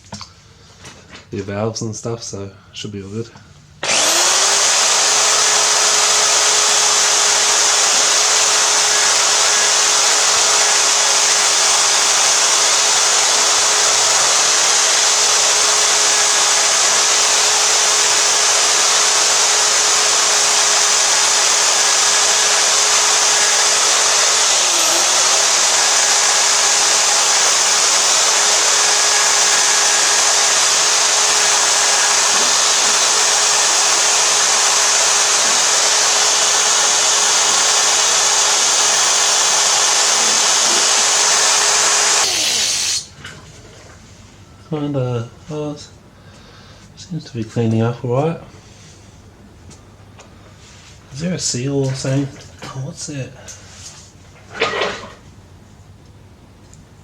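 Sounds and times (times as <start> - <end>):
drill wire wheel scrubbing metal: 3.8 - 43.1.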